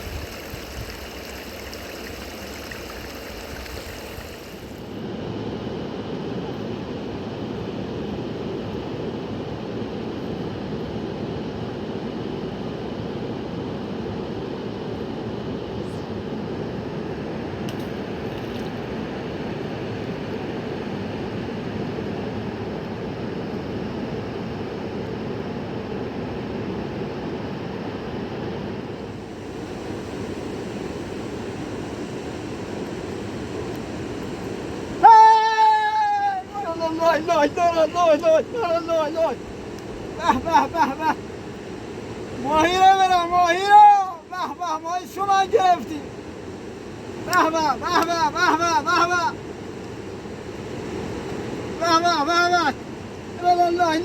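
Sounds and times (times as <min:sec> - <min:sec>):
fast-flowing river rushing: 0:00.0 - 0:04.9.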